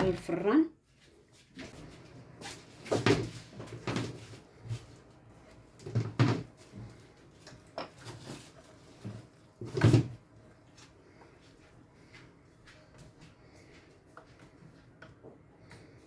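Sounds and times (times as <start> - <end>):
kitchen clunks and knocks: 5.8 - 6.8, 9.0 - 10.2.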